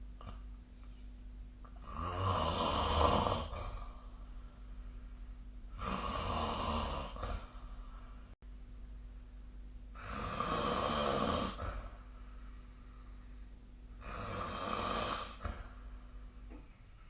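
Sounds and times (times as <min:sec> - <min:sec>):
person snoring: 0:01.8 - 0:04.2, 0:05.7 - 0:08.2, 0:10.0 - 0:12.0, 0:14.0 - 0:15.8.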